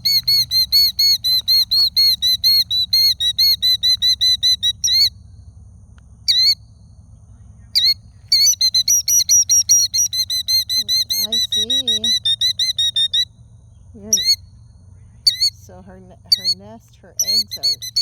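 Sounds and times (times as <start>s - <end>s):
bird shrill alarm call: 0.0s - 5.1s, 6.3s - 6.6s, 7.8s - 13.3s, 14.1s - 14.5s, 15.3s - 15.6s, 17.2s - 18.0s.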